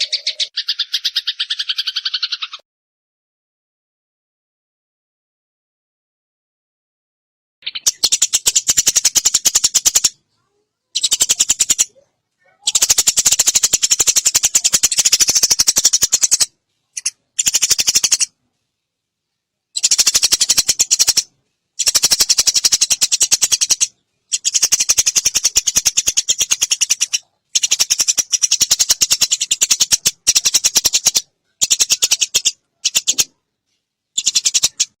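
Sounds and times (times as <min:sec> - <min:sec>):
sparrow chattering calls: 0:00.0 - 0:02.6, 0:07.6 - 0:10.2, 0:11.0 - 0:18.3, 0:19.8 - 0:33.4, 0:34.1 - 0:35.0.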